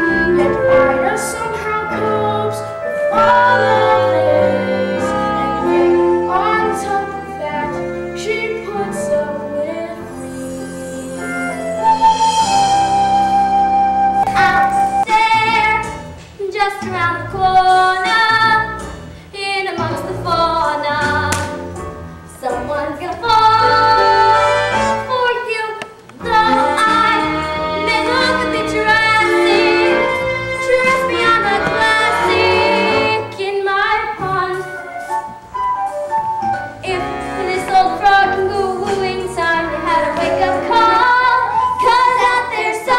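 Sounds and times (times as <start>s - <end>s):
instrumental accompaniment: 0.0s - 42.9s
young cast singing: 0.5s - 10.7s, 26.2s - 34.6s, 36.9s - 42.9s
female voice singing: 25.1s - 34.9s.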